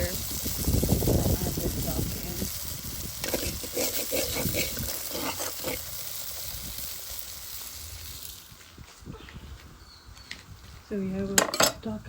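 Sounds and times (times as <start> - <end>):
curry sizzling in a pot: 0.0 - 8.7.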